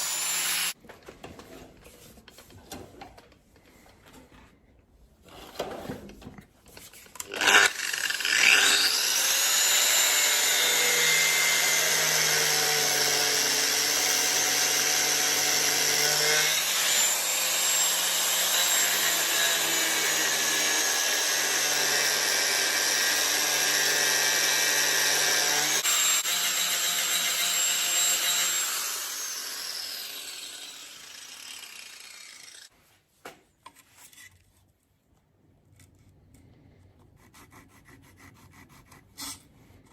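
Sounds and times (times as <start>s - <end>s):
power tool motor running: 0.0s - 0.8s, 20.4s - 32.7s.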